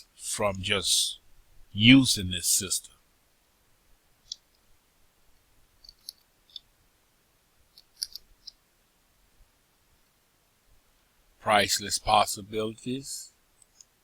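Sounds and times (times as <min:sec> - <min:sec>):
faint computer mouse clicks: 0:07.7 - 0:08.6.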